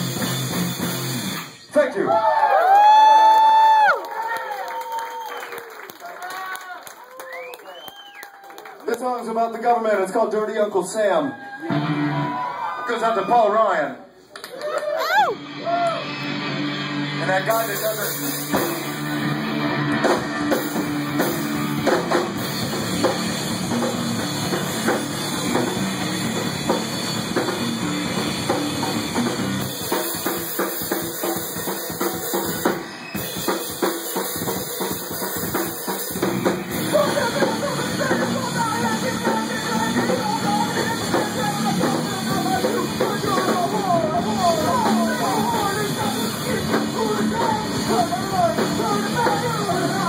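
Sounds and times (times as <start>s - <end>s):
drum kit beat: 0.0s - 1.6s, 15.0s - 50.0s
rock band playing: 0.0s - 4.0s, 8.5s - 13.7s, 14.6s - 50.0s.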